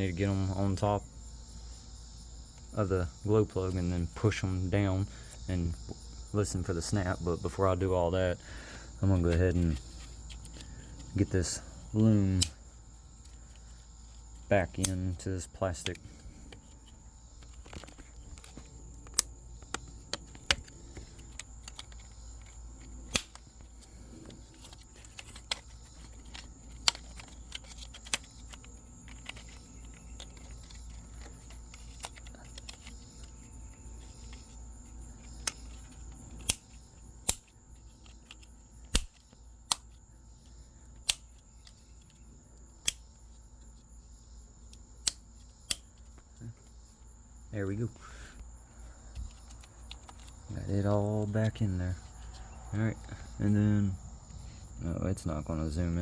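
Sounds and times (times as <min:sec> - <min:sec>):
insect chirring: 0:00.0 - 0:56.0
plastic clicks and snaps: 0:17.4 - 0:23.5, 0:24.2 - 0:33.3, 0:35.3 - 0:40.0, 0:41.0 - 0:42.1, 0:49.1 - 0:50.4.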